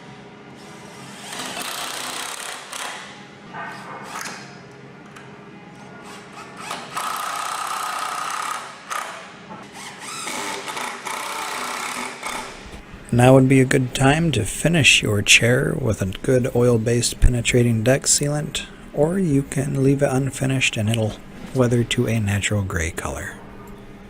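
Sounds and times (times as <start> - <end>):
power drill whirring: 9.6 - 12.7.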